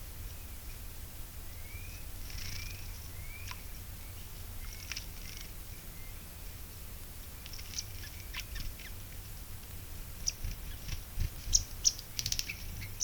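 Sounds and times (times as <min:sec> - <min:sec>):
small birds chirping: 0:01.5 - 0:06.3, 0:07.4 - 0:09.2, 0:10.1 - 0:13.0.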